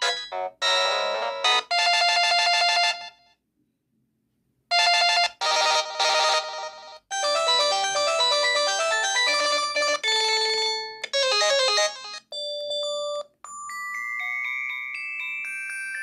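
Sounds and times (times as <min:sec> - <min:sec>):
mobile phone electronic melodies: 0:04.8 - 0:13.7.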